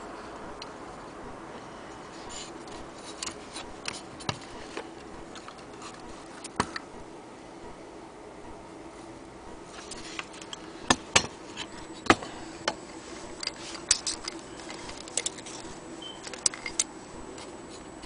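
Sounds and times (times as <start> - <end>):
faint hum: 0.0 - 18.0.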